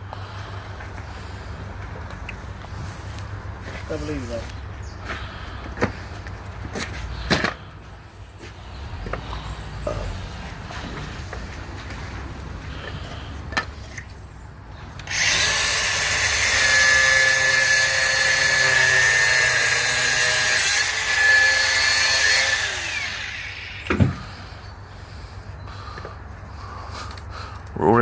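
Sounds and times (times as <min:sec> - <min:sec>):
power tool whining: 0:14.9 - 0:25.3
thump: 0:23.9 - 0:24.3.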